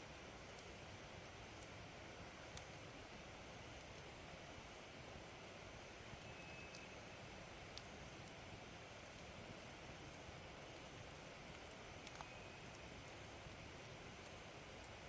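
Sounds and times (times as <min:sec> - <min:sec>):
wood fire hissing and crackling: 0:00.0 - 0:15.0.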